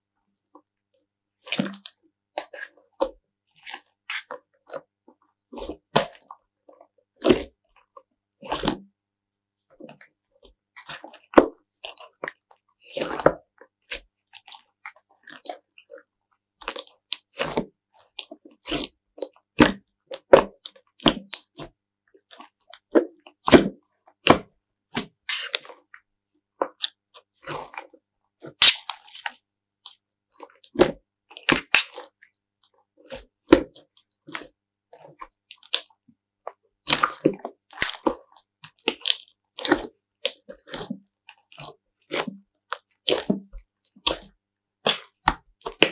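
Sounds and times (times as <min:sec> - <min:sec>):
slime squelching: 0:25.3 - 0:25.8, 0:28.5 - 0:29.4, 0:30.8 - 0:32.0.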